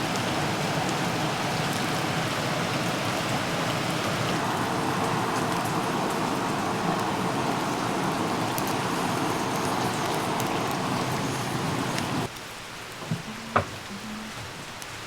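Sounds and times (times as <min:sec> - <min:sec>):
steady rain falling: 0:00.0 - 0:15.0
knock: 0:13.0 - 0:13.8.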